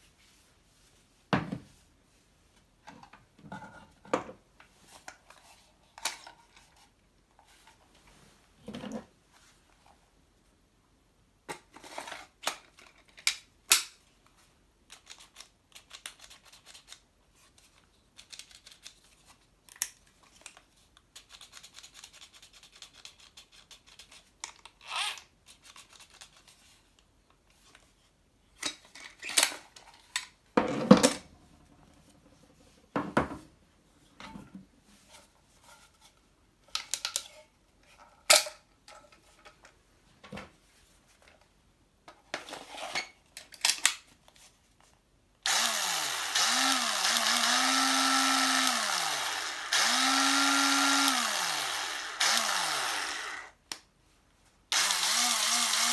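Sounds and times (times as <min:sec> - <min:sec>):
plastic and metal objects handled: 0:11.5 - 0:24.8, 0:25.5 - 0:33.4.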